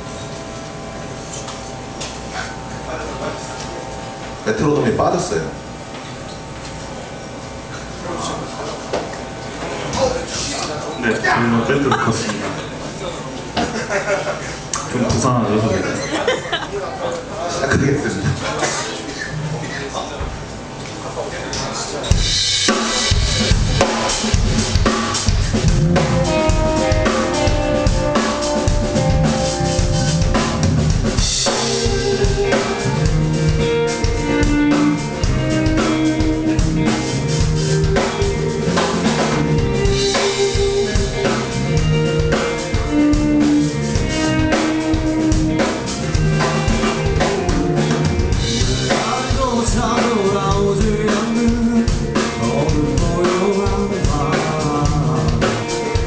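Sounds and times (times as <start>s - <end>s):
drum kit with cymbal crashes: 21.6s - 56.0s
live rock band playing: 22.1s - 56.0s.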